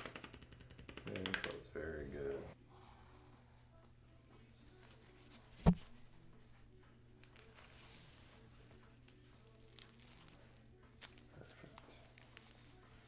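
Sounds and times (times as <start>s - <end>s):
sharp knock: 5.6s - 5.9s.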